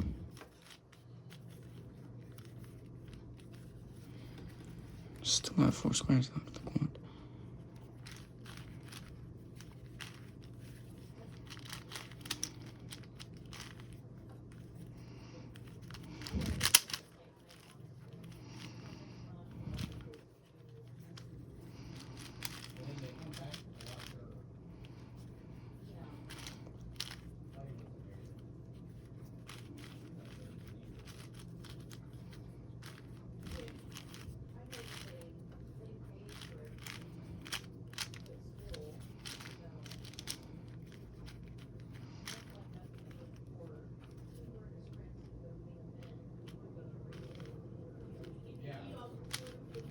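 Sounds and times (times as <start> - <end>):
puzzle cube twisting clicks: 8.0 - 14.0, 15.6 - 18.7, 21.9 - 24.2, 26.3 - 27.3, 29.4 - 35.2, 36.3 - 38.3, 38.9 - 41.6.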